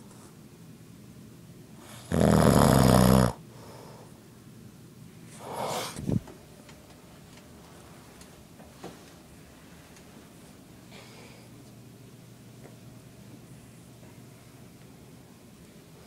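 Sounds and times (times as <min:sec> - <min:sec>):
man snoring: 0:01.9 - 0:03.4
soft breath: 0:03.5 - 0:04.2, 0:05.3 - 0:06.2, 0:10.5 - 0:11.6.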